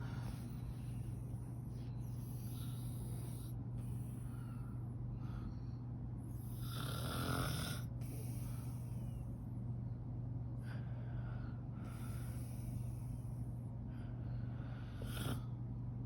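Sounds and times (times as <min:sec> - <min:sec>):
faint breaths: 0:00.0 - 0:07.0, 0:07.6 - 0:15.8
steady low hum: 0:00.0 - 0:16.0
woman snoring: 0:06.4 - 0:08.4.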